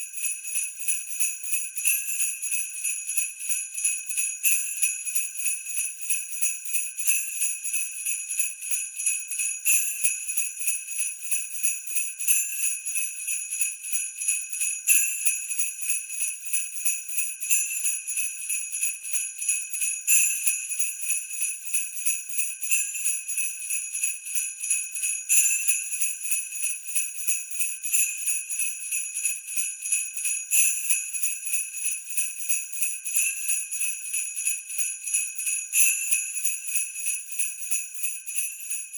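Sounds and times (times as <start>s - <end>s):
sleigh bells jingling: 16.2s - 38.9s.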